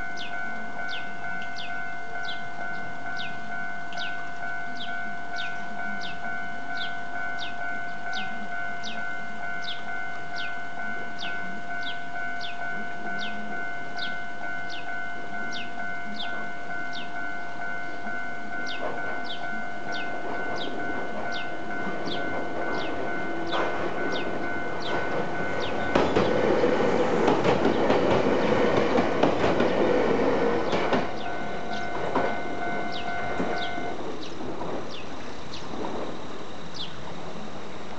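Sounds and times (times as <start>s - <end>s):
level-crossing alarm ringing: 0.0s - 36.9s
electric train passing: 0.0s - 37.9s
wheels clattering on rails: 0.0s - 37.9s.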